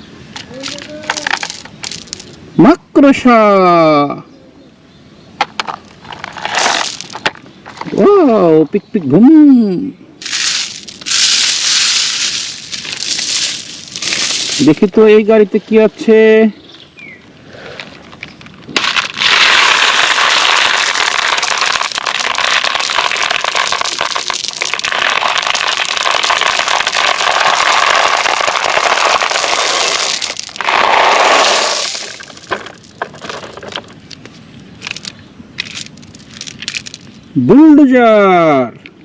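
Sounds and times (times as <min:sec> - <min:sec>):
marbles rolling and clicking: 0:00.4 - 0:02.4, 0:05.4 - 0:08.0, 0:10.2 - 0:15.2, 0:18.7 - 0:37.3
marbles pouring and clattering: 0:00.5 - 0:02.4, 0:06.3 - 0:07.3, 0:10.2 - 0:15.0, 0:18.8 - 0:34.0, 0:34.8 - 0:37.1.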